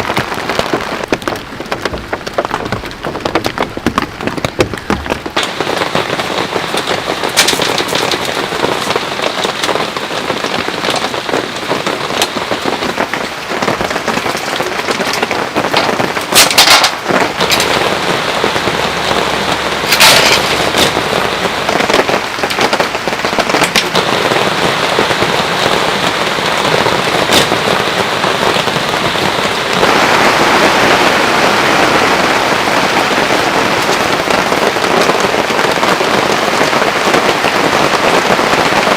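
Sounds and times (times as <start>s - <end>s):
heavy rain falling: 0.0s - 38.9s
heavy drops striking hard surface: 1.0s - 13.0s, 13.7s - 29.6s.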